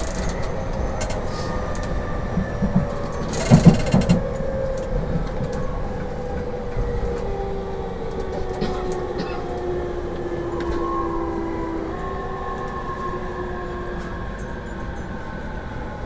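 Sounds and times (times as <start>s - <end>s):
train motor whining: 0.0s - 7.4s
wheels rumbling on rail: 0.0s - 16.0s.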